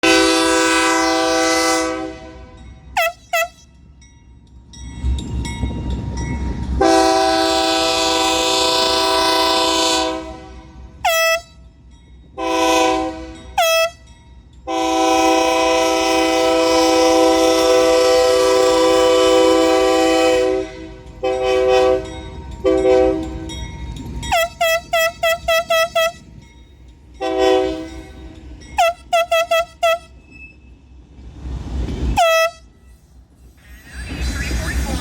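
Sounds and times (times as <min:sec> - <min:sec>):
locomotive air horn blasts: 0:00.0 - 0:03.7, 0:06.8 - 0:11.6, 0:12.4 - 0:14.1, 0:14.7 - 0:23.4, 0:24.3 - 0:26.3, 0:27.2 - 0:28.1, 0:28.8 - 0:30.2, 0:32.1 - 0:33.0
low rumble of train engine: 0:00.0 - 0:35.0.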